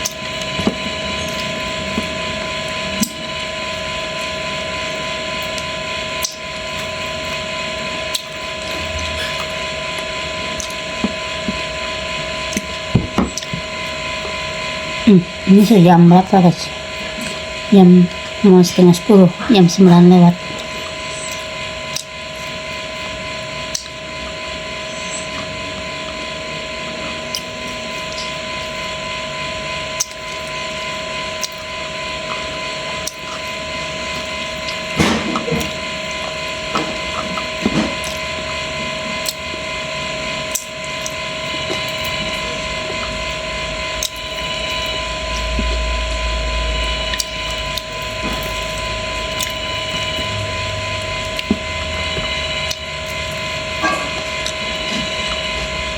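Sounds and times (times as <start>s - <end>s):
steady hum: 0.0s - 55.9s
oil crackling and popping: 29.7s - 55.9s.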